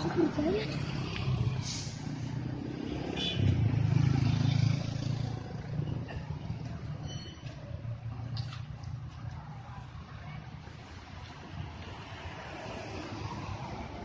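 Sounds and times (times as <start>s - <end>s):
bus engine passing: 0.0s - 9.2s.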